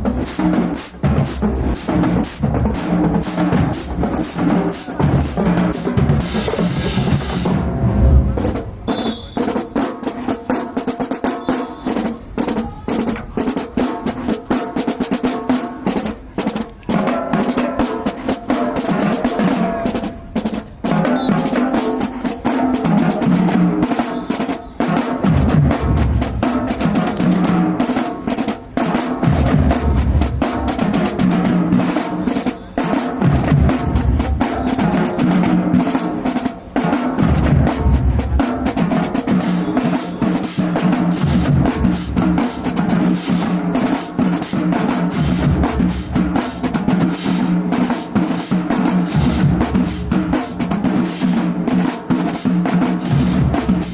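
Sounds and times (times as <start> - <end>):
snare drum pattern: 0.0 - 53.9
pitched bass drums: 37.2 - 51.7.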